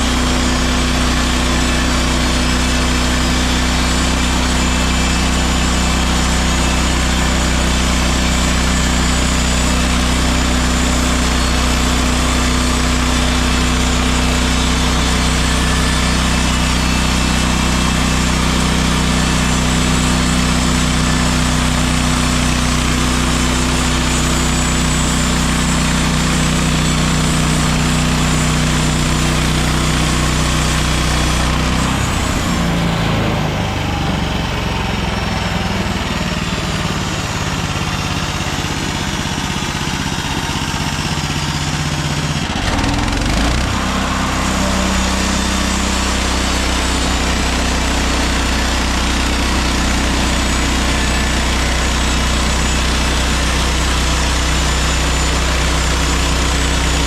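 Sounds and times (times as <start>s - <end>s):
gasoline engine running: 0.0s - 57.0s.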